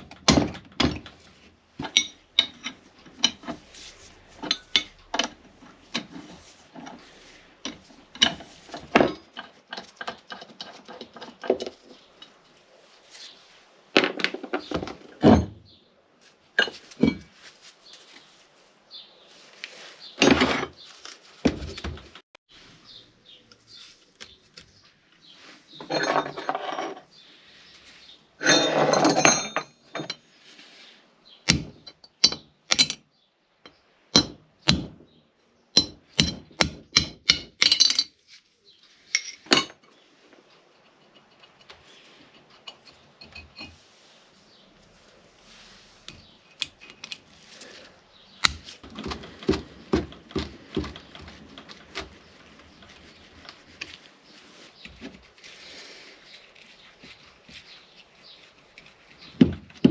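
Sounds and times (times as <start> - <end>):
metal clanking on metal: 0.0 - 12.5, 25.8 - 27.1, 28.4 - 30.2
metal scraping: 1.1 - 13.4, 28.4 - 30.5.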